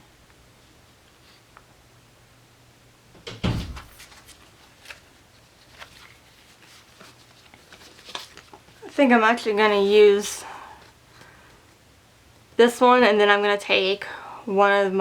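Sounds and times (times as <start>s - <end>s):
paper rustling: 3.5s - 10.3s.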